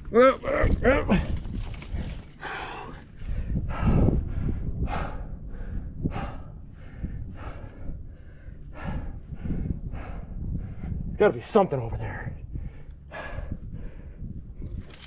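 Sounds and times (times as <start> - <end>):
person breathing hard: 1.2 - 11.1, 12.5 - 14.6.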